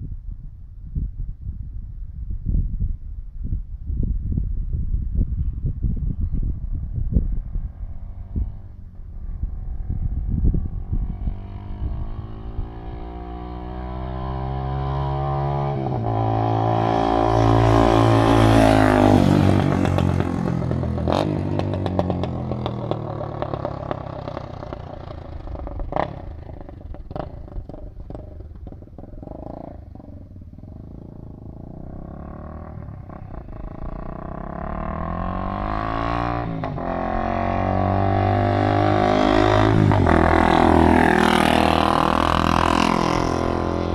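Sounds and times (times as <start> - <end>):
motorcycle engine passing: 6.7 - 43.9.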